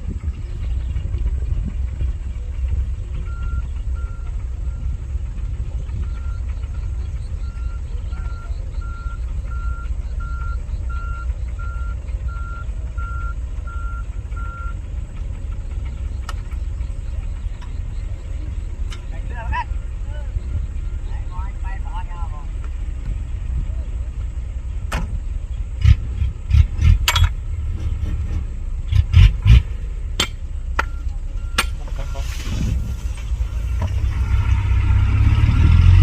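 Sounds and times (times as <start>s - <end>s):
diesel machine rumbling: 0.0s - 36.0s
reversing alarm beeping: 3.3s - 14.9s, 30.8s - 35.0s.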